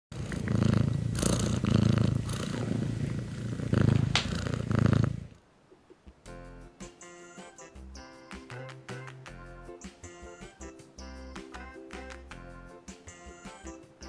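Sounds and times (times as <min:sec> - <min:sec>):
cat purring: 0:00.1 - 0:06.0.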